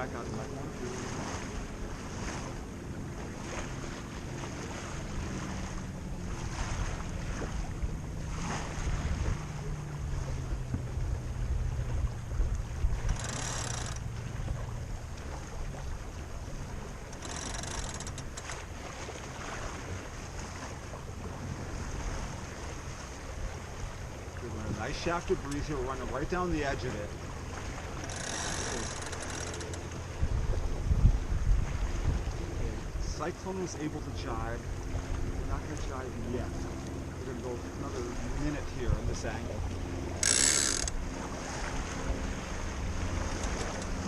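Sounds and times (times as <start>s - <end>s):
wind on microphone: 0.0s - 13.4s, 29.9s - 33.1s
water washing past hull: 0.0s - 44.0s.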